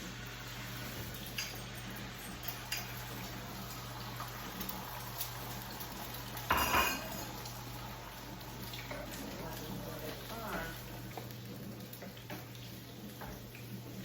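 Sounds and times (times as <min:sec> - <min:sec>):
utensil scraping frying pan: 0:00.0 - 0:08.0
butter sizzling: 0:00.0 - 0:14.0.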